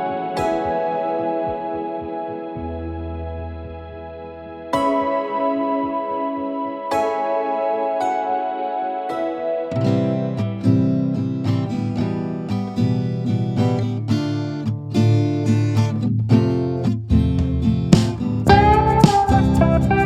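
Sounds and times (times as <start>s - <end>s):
acoustic guitar music: 0.0s - 20.0s.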